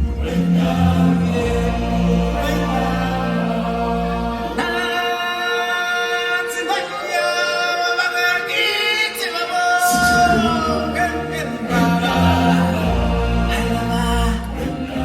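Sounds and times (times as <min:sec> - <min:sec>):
low musical accompaniment: 0:00.0 - 0:06.6, 0:09.9 - 0:15.0
group singing chant-like line: 0:00.0 - 0:15.0.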